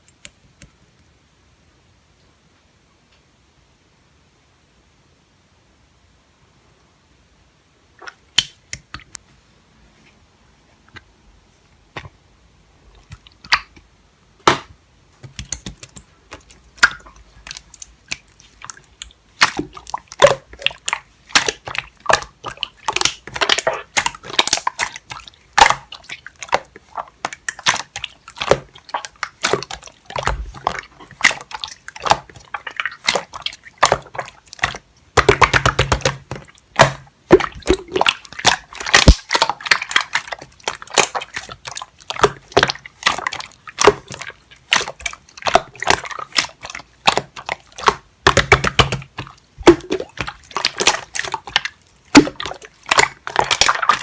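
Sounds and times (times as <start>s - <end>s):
wet sticky clicking and crackling: 0.0s - 1.0s, 12.9s - 13.9s, 15.2s - 54.0s.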